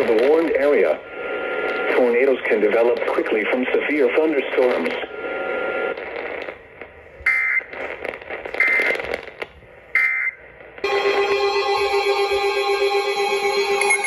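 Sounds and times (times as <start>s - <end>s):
crackly radio static: 0.0s - 12.3s
steady alert tone: 10.8s - 14.0s.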